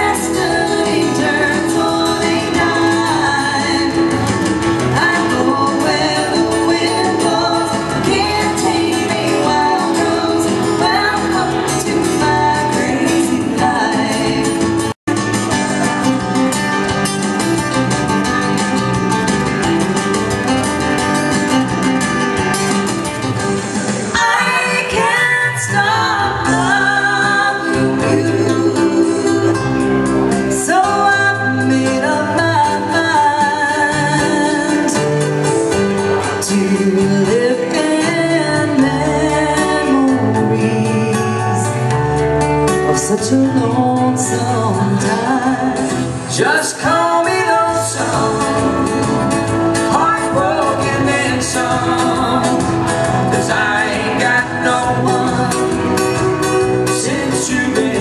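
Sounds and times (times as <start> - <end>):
person singing: 0.0 - 16.8, 23.6 - 58.0
band playing: 0.0 - 58.0.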